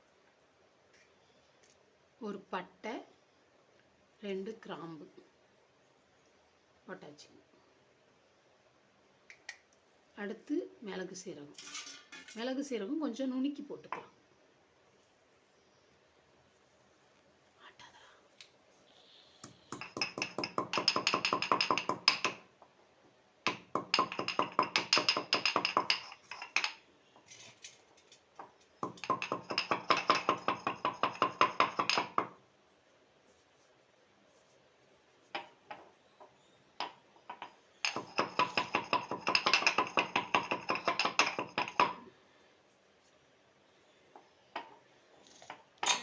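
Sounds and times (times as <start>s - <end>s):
pestle pounding spices: 19.7s - 22.4s, 23.5s - 26.5s, 28.8s - 32.4s, 37.4s - 42.0s.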